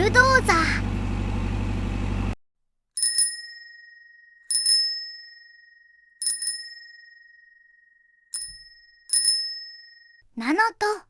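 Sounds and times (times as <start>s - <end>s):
bicycle bell ringing: 3.0s - 10.2s.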